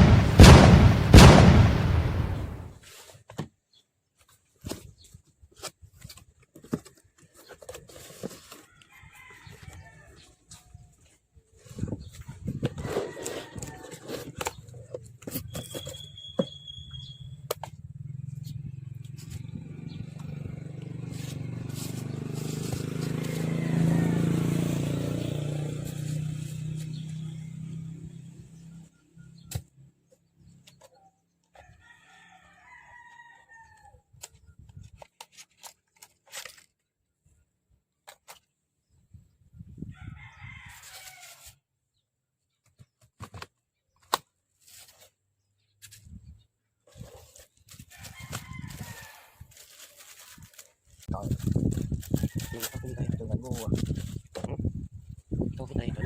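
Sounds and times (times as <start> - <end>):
rooster crowing: 8.8 - 10.2, 12.8 - 14.2, 22.9 - 25.0, 31.6 - 34.0, 39.9 - 41.5, 47.9 - 49.6, 52.2 - 53.2.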